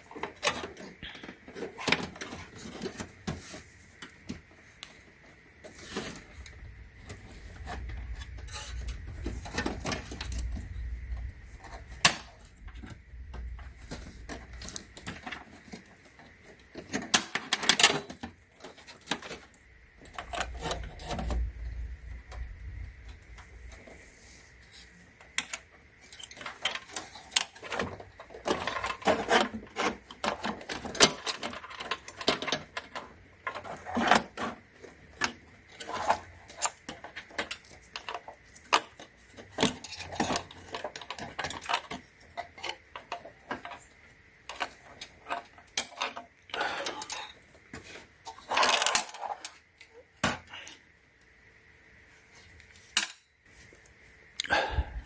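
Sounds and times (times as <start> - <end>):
computer parts and tools clattering: 0.0 - 24.0, 25.2 - 49.6
low rumble: 6.3 - 14.3.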